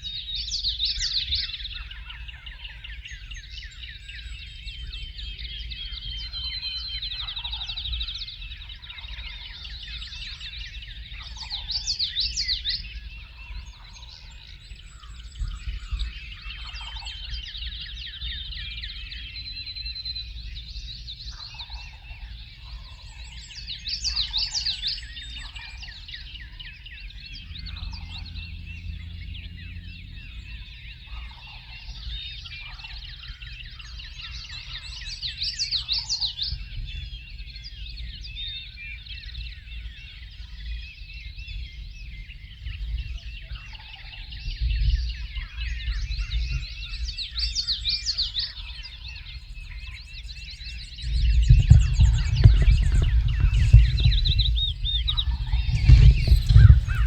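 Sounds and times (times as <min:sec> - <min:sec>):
songbirds singing: 0:00.0 - 0:57.0
loud fast birdsong: 0:00.1 - 0:57.0
low rumble: 0:50.8 - 0:57.0
faint low hum: 0:51.0 - 0:57.0.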